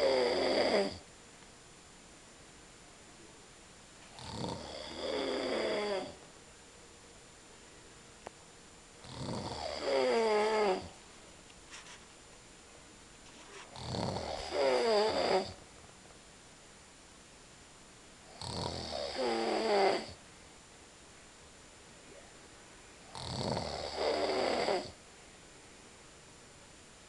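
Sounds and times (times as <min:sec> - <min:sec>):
man snoring heavily: 0:00.0 - 0:01.0, 0:04.2 - 0:06.2, 0:09.0 - 0:11.0, 0:13.7 - 0:15.6, 0:18.3 - 0:20.2, 0:23.1 - 0:25.0.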